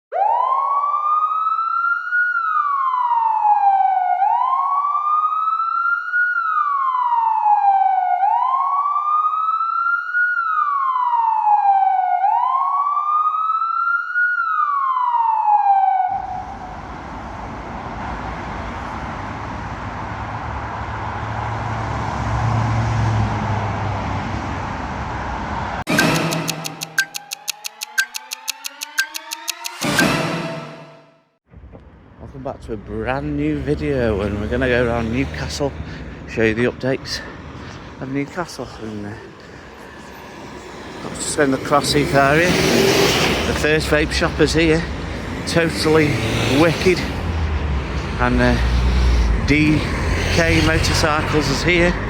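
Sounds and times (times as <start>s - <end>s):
police siren wailing: 0.1s - 19.1s, 25.8s - 31.1s, 37.2s - 52.0s
outdoor road noise: 0.1s - 52.0s
vehicle passing rumble: 16.1s - 25.8s, 31.5s - 52.0s
sharp click: 25.9s - 30.4s.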